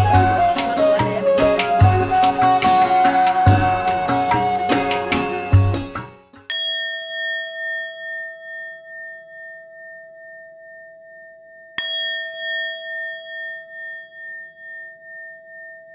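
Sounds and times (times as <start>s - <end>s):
metal bell ringing: 0.0s - 7.9s.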